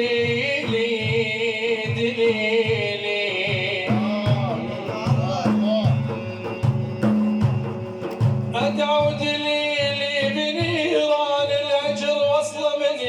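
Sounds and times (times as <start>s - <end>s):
hand drum beat: 0.0s - 12.4s.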